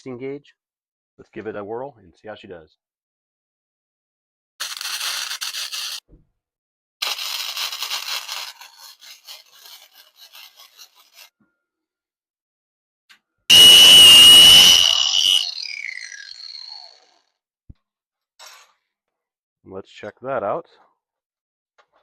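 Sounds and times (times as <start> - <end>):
welding arc crackling: 13.5 - 15.6
power tool whining: 13.5 - 17.1.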